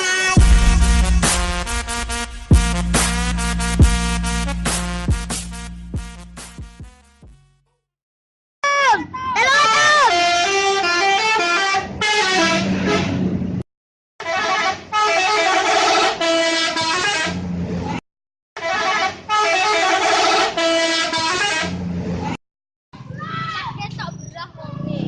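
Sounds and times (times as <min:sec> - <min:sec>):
musical air horns: 0:00.0 - 0:07.1, 0:09.8 - 0:13.2, 0:14.2 - 0:17.4, 0:18.6 - 0:21.8.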